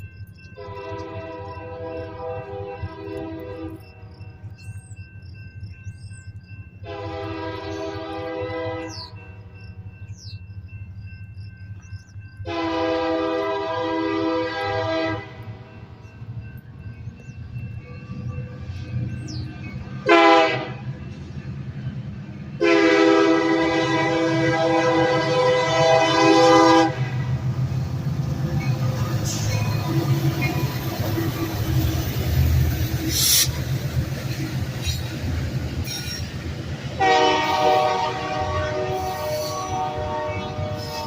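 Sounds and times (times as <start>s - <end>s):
diesel train rumbling: 0.0s - 41.0s
locomotive air horn blasts: 0.6s - 3.8s, 6.8s - 9.1s, 12.4s - 15.7s, 20.0s - 20.9s, 22.6s - 27.4s, 37.0s - 41.0s.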